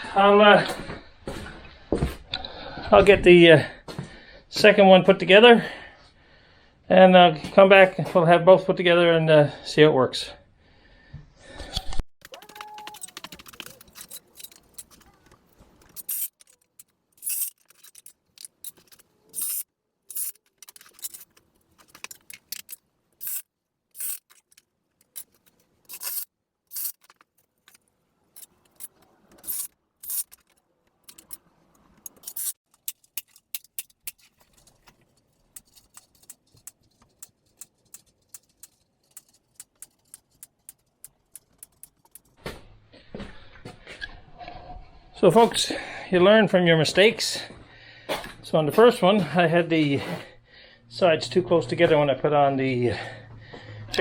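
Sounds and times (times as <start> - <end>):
chicken wire rattling: 12.3 - 18.9.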